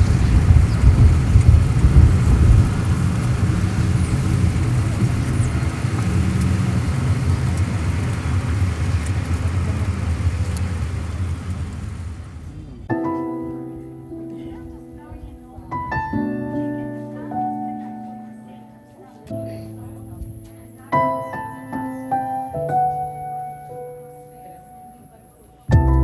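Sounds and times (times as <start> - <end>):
car rumbling on road: 0.0 - 12.9.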